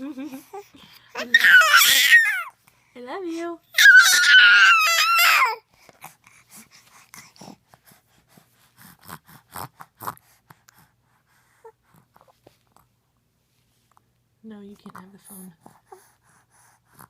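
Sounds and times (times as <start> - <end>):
baby vocalizing: 0.4 - 2.5.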